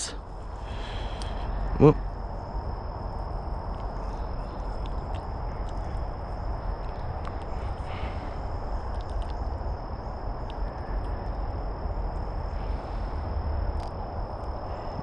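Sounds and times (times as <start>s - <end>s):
high-pitched insect drone: 0.0s - 15.0s
low rumbling noise: 0.0s - 15.0s
faint clicks: 8.9s - 9.4s.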